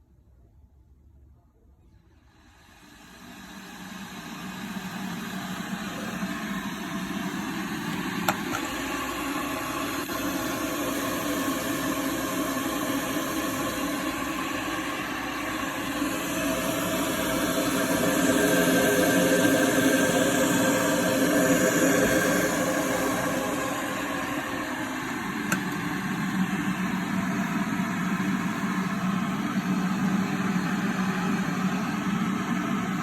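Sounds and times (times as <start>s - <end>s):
electric kettle hissing: 2.3s - 33.0s
kettle click: 8.2s - 8.8s, 25.4s - 25.9s.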